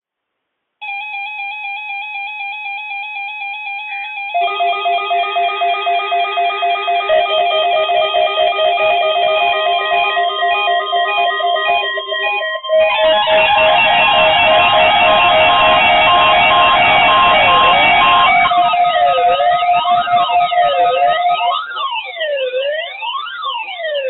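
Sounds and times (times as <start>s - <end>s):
electronic alarm beeping: 3.4s - 23.3s.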